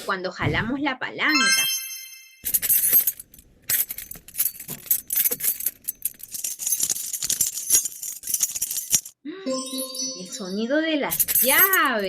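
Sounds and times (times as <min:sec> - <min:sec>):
keys jangling: 0:02.5 - 0:09.2, 0:11.1 - 0:12.0.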